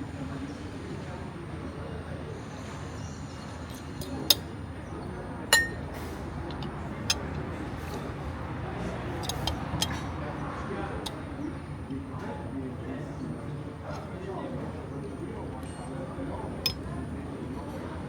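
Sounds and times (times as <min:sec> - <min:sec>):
sharp clinks: 0:05.5 - 0:07.4.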